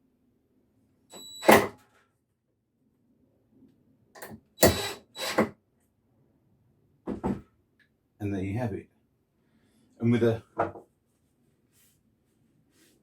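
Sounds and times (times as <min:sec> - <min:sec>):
cordless drill driving screws: 0:04.6 - 0:05.5.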